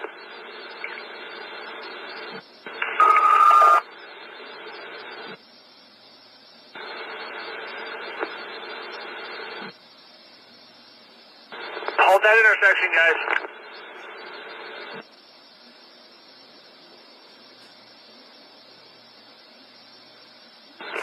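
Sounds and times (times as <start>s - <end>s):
radio static hiss: 0.0s - 21.0s.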